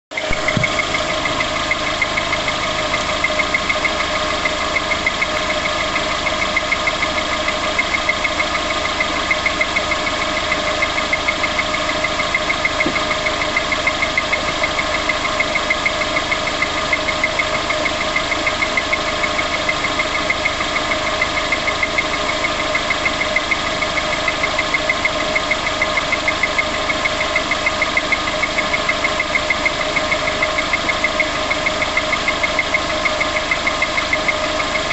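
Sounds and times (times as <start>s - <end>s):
car engine idling: 0.1s - 34.9s
rapid regular engine tapping: 0.1s - 34.9s.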